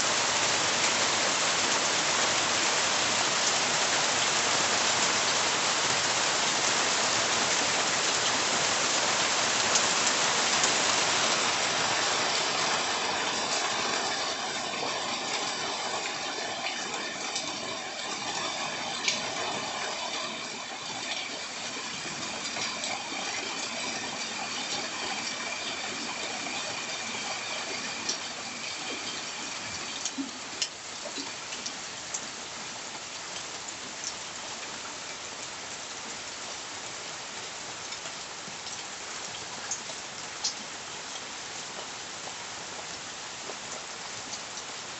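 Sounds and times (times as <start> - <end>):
steady rain falling: 0.0 - 44.9.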